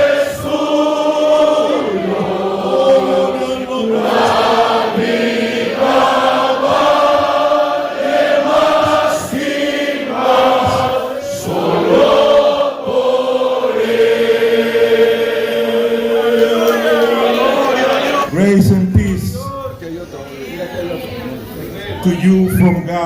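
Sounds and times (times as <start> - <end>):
group singing a hymn: 0.0 - 18.3.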